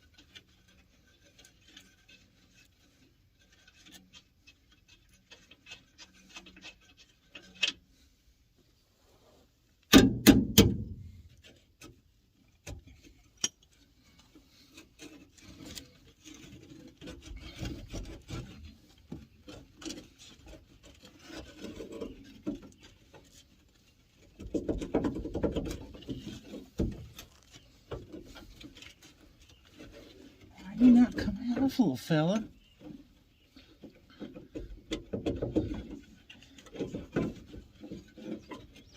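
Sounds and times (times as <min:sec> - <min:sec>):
scraping and rubbing on metal: 0:00.0 - 0:09.7, 0:11.4 - 0:31.9, 0:32.6 - 0:38.9
sharp metallic knocks: 0:09.9 - 0:11.0.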